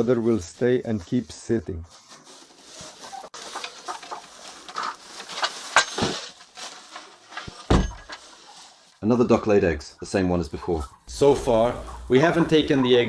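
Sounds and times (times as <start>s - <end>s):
hen clucking: 2.8s - 5.0s, 8.2s - 13.0s.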